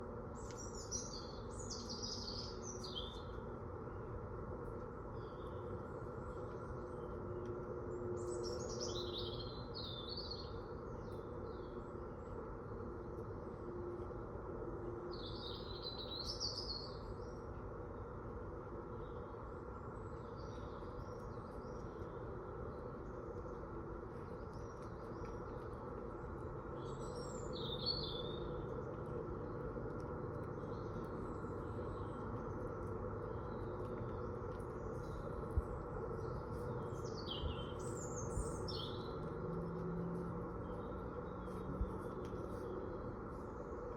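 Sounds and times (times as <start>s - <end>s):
low background noise: 0.0s - 43.9s
songbird chirping: 19.9s - 43.9s.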